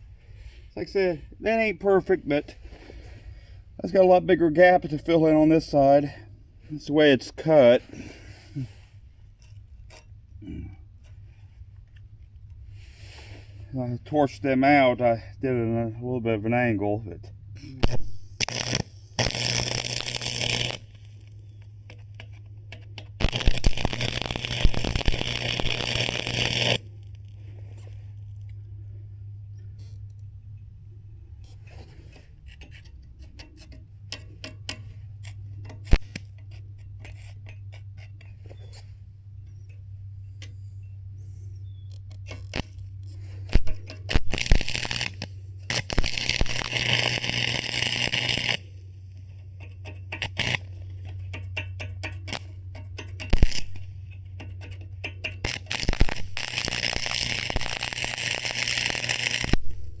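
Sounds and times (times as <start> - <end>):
low hum: 17.0 - 60.0
welding arc crackling: 17.7 - 28.6, 35.8 - 36.4, 41.9 - 49.0, 50.0 - 54.0, 55.0 - 60.0.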